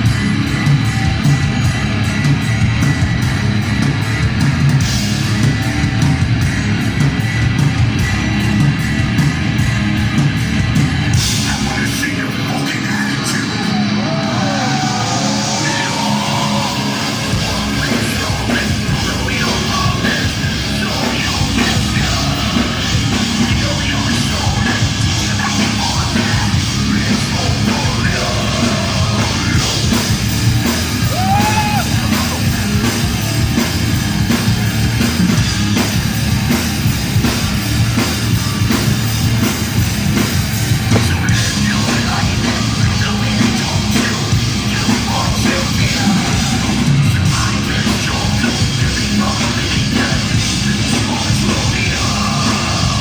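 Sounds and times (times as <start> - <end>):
heavy metal band playing live: 0.0 - 53.0
shouted vocals: 13.2 - 18.4, 30.9 - 33.2.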